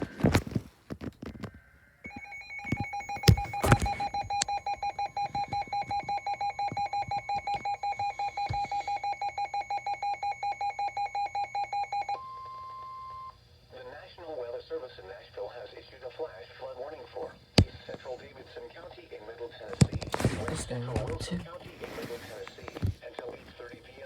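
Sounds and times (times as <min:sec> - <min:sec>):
rapid alarm beeping: 0:02.1 - 0:13.3.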